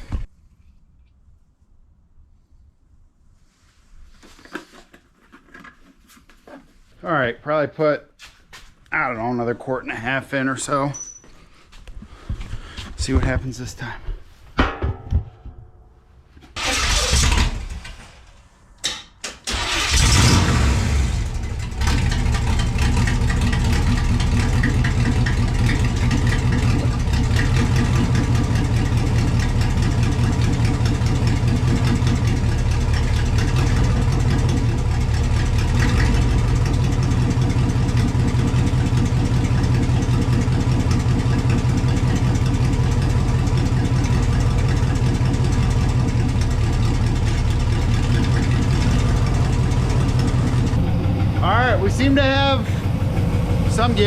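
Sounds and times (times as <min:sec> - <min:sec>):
car engine starting and idling: 0:16.5 - 0:54.0.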